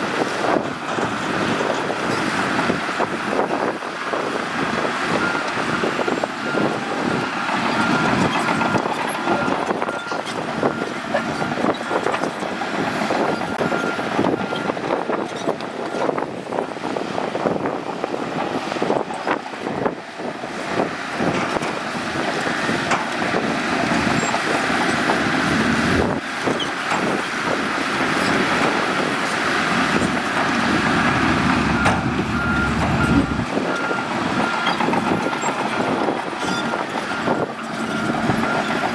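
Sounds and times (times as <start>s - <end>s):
bulldozer diesel engine under load: 0.0s - 38.9s
reversing alarm beeping: 31.2s - 38.8s.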